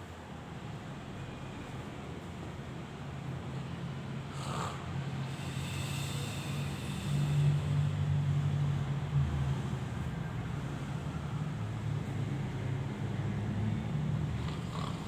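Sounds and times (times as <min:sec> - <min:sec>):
person snoring: 0:04.3 - 0:07.4, 0:14.4 - 0:15.0.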